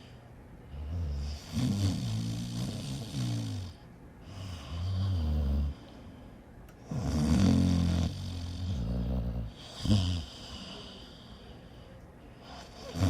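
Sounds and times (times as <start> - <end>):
person snoring: 0.8 - 5.8, 6.9 - 11.1, 12.7 - 13.0.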